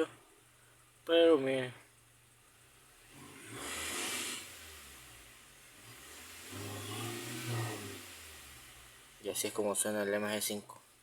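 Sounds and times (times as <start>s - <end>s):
car engine revving: 2.5s - 10.0s.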